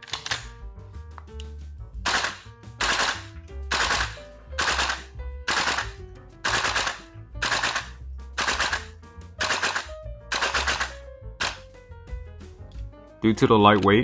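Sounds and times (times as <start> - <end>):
background music: 0.0 - 14.0
airsoft rifle firing bursts: 2.1 - 5.9, 6.5 - 11.6.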